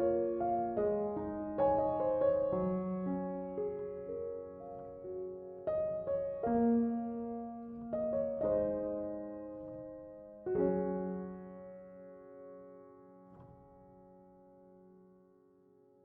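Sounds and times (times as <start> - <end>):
soft piano music: 0.0 - 16.0.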